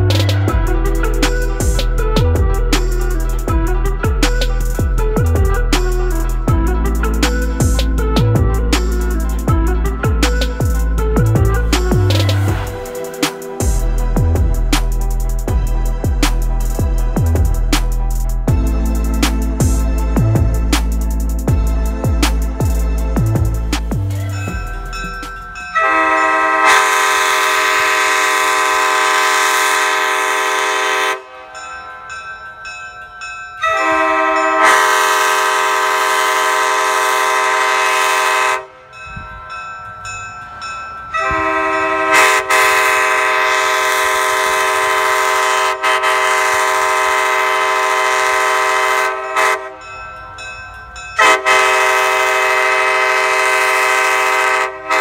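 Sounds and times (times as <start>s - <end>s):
locomotive bells: 0.0s - 55.0s
locomotive air horn blasts: 25.7s - 31.7s, 33.6s - 38.9s, 41.1s - 49.9s, 51.2s - 55.0s.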